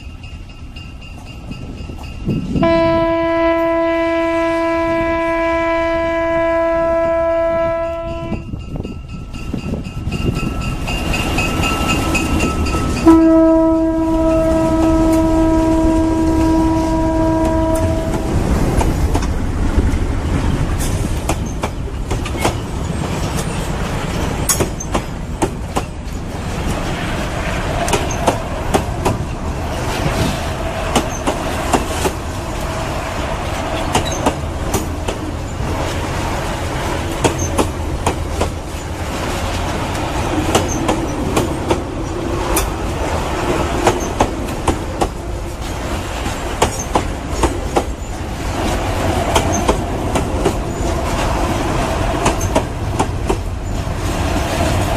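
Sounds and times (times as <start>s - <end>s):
low train rumble: 0.0s - 54.9s
train wheels clicking over rail joints: 8.0s - 13.1s, 17.4s - 54.9s.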